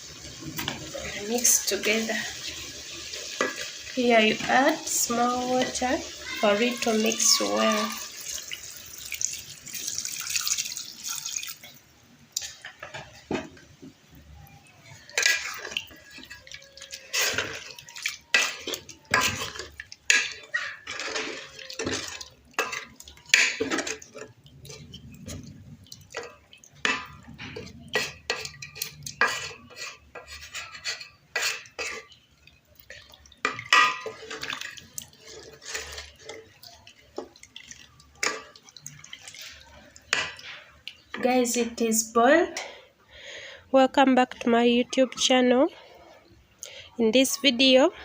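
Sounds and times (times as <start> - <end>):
water pouring into saucepan: 0.0 - 11.9, 14.9 - 41.9
spoon stirring stew in pot: 0.2 - 8.6, 14.9 - 42.2.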